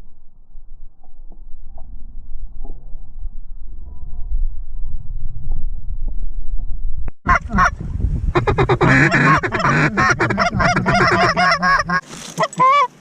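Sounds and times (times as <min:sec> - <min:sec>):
low rumble: 0:00.0 - 0:12.0
geese honking and clucking: 0:07.3 - 0:07.8, 0:08.4 - 0:13.0.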